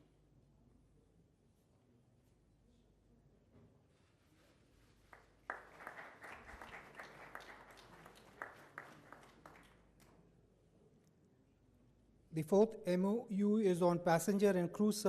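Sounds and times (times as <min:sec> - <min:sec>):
small audience applauding: 0:05.0 - 0:10.2.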